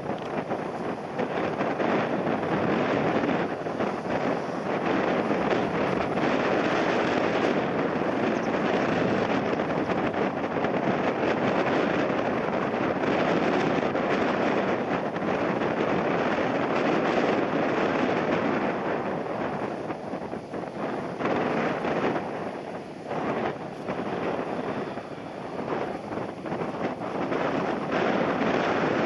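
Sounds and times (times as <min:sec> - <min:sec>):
jet engines roaring: 0:00.0 - 0:29.0
wind buffeting microphone: 0:00.0 - 0:29.0.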